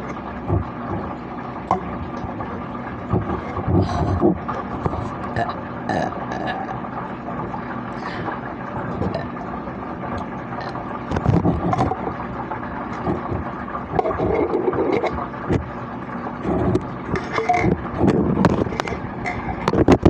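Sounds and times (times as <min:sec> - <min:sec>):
background hum: 0:00.0 - 0:20.0
person burping: 0:05.2 - 0:06.9, 0:09.0 - 0:09.4, 0:10.6 - 0:10.8.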